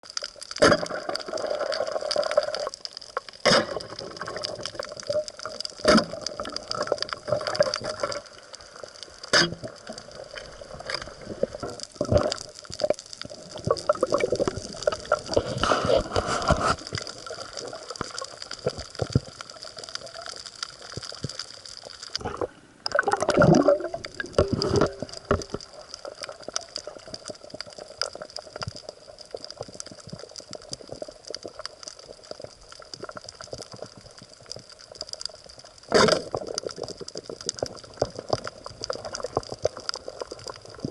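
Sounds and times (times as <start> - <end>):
steady hiss: 0.8 - 22.9
water gurgling and bubbling: 3.4 - 8.5, 9.3 - 20.4, 22.2 - 29.4.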